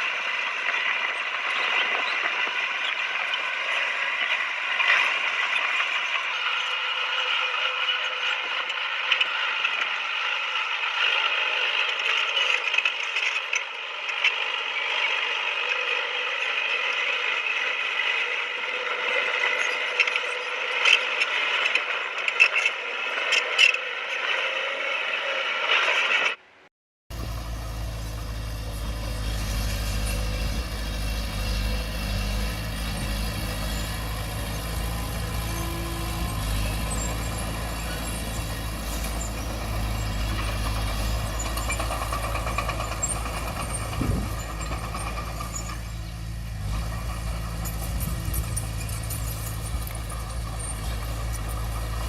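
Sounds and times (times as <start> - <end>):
bulldozer engine drone: 0.0 - 52.0
tracks clicking and rattling: 27.1 - 52.0.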